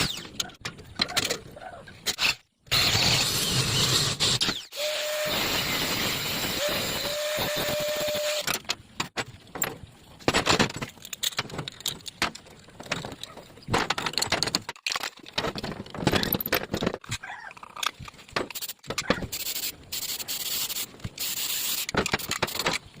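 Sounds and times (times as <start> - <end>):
hard objects being handled: 6.9 - 23.0
steady hiss: 18.6 - 22.7.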